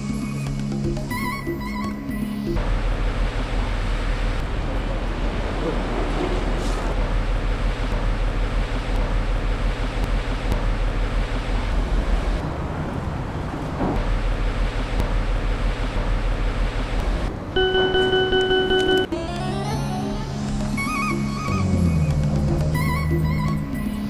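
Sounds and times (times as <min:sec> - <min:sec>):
vehicle rumble: 0:02.6 - 0:24.0.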